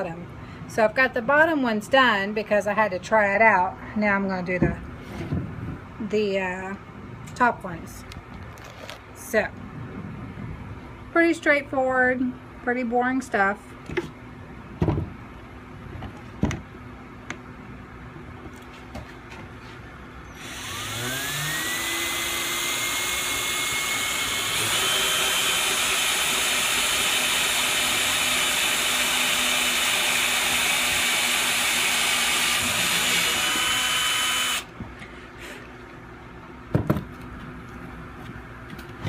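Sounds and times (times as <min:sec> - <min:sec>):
power drill whining: 0:20.3 - 0:34.7.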